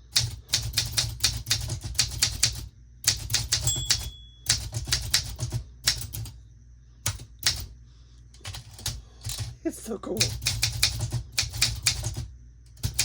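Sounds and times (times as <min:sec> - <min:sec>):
typewriter key strikes: 0:03.1 - 0:06.2, 0:12.8 - 0:13.0
typewriter bell ring: 0:03.5 - 0:04.8.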